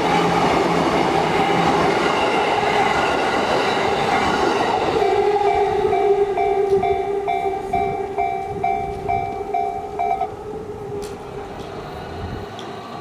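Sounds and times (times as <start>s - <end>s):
electric train running past: 0.0s - 13.0s
level crossing warning bell: 4.9s - 11.0s.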